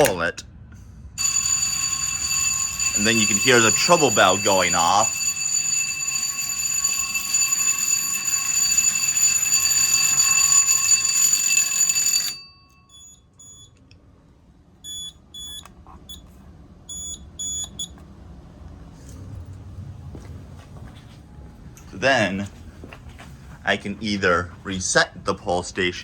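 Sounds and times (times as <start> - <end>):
fire alarm bell ringing: 1.2 - 13.7, 16.9 - 17.8.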